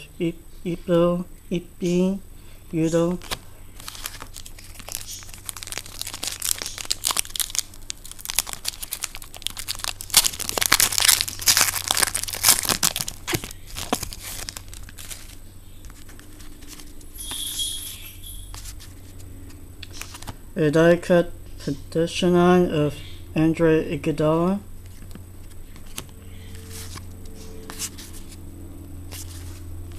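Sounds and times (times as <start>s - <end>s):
plastic wrapper crinkling and tearing: 3.2s - 17.0s.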